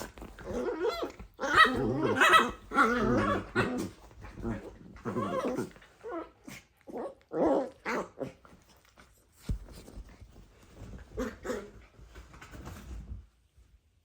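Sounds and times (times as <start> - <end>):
puppies growling and yipping: 0.0 - 8.4.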